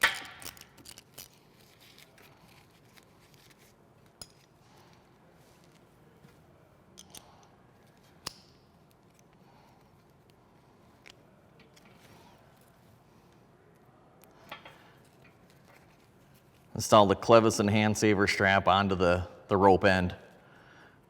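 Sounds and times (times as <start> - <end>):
metallic clicks of hand tools: 7.0 - 7.5, 8.2 - 8.6.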